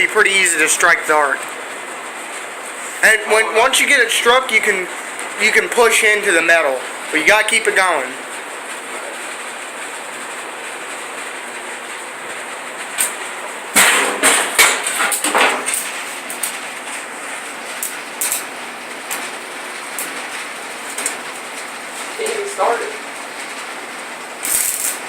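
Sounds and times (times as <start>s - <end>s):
welding arc crackling and sputtering: 0.0s - 25.0s
steady hiss: 24.4s - 25.0s.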